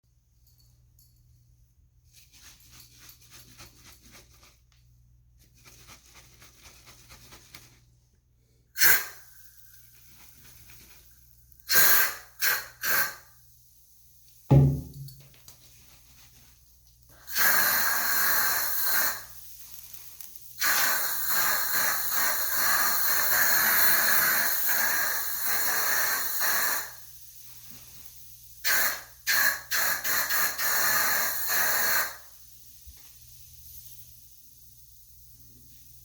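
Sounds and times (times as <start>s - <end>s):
aerosol can spraying: 8.8s - 9.3s, 11.6s - 13.3s, 17.1s - 32.4s.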